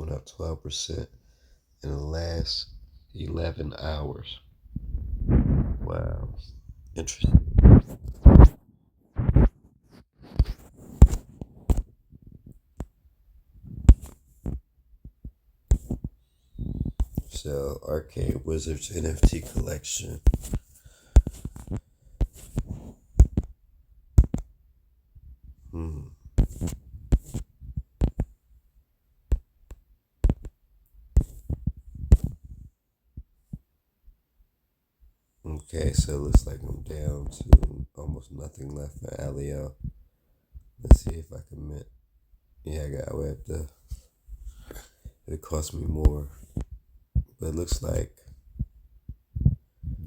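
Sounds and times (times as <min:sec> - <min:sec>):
soft thumps and clicks: 0:04.7 - 0:08.6, 0:09.2 - 0:13.0, 0:13.6 - 0:17.4, 0:19.2 - 0:23.6, 0:24.2 - 0:24.5, 0:26.4 - 0:28.4, 0:29.3 - 0:30.6, 0:31.2 - 0:33.7, 0:35.8 - 0:37.8, 0:40.6 - 0:41.2.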